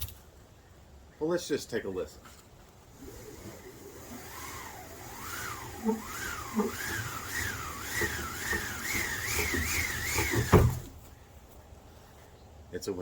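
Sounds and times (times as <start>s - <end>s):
thump: 10.3s - 11.0s.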